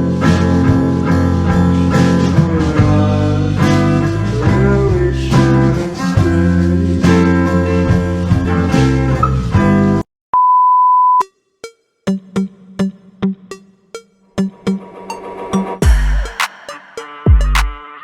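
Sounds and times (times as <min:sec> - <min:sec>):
music with guitar: 0:00.0 - 0:10.0.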